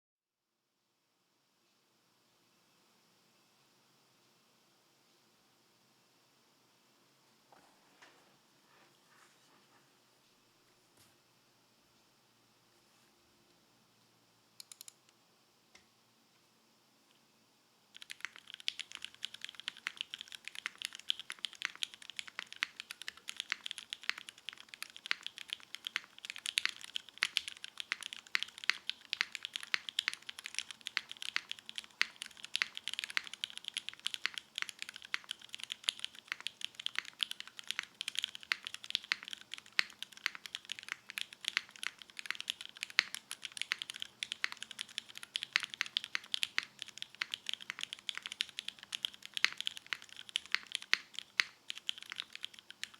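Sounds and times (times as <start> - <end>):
mechanical keyboard typing: 14.6 - 15.0, 18.0 - 52.9.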